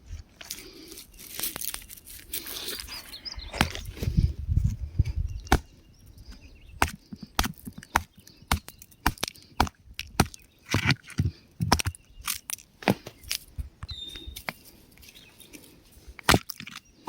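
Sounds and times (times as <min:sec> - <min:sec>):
rock cracking and snapping: 0:06.8 - 0:13.4, 0:16.2 - 0:16.9.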